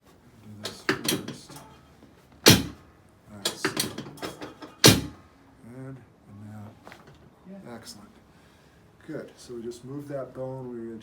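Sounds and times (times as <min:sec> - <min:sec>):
chiropractic adjustment thuds: 0:00.7 - 0:01.7, 0:02.4 - 0:02.8, 0:03.5 - 0:05.2.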